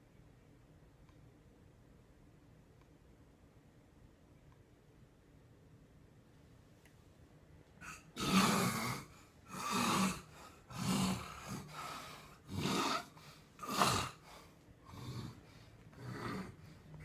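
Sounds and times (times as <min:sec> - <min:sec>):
man snoring heavily: 0:07.9 - 0:14.3, 0:14.9 - 0:15.4, 0:16.0 - 0:16.6.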